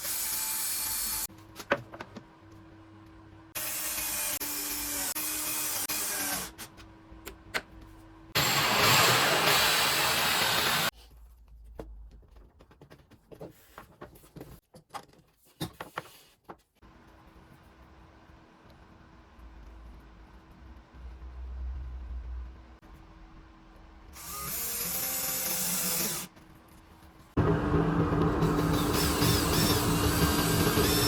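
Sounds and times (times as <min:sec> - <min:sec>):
power tool running: 0:03.6 - 0:06.6, 0:08.4 - 0:10.9, 0:27.4 - 0:31.0.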